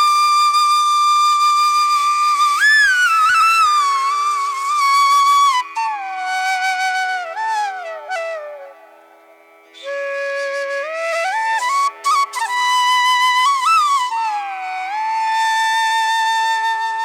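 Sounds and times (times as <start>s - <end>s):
solo flute melody: 0.0s - 17.0s.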